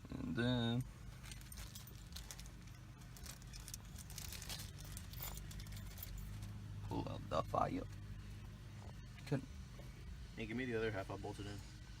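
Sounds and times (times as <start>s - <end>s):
steady low hum: 0.0s - 12.0s
rustling of handling parts: 1.0s - 6.6s.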